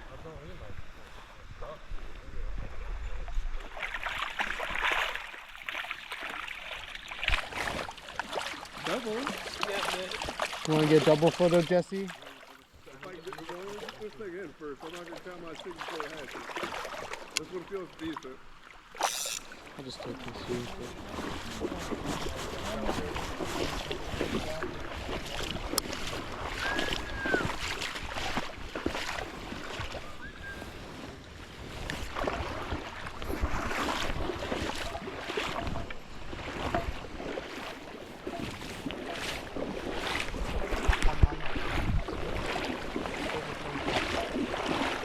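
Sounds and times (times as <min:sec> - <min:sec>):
creek water rushing: 0:03.8 - 0:30.5
wind buffeting microphone: 0:20.2 - 0:37.4, 0:38.2 - 0:44.6.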